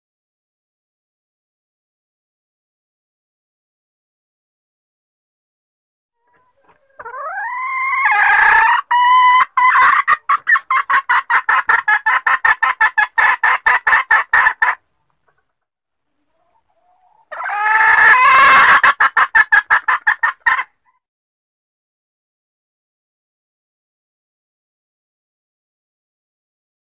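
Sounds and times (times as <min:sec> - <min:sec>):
hen cackling and clucking: 0:06.2 - 0:15.5, 0:16.1 - 0:21.0.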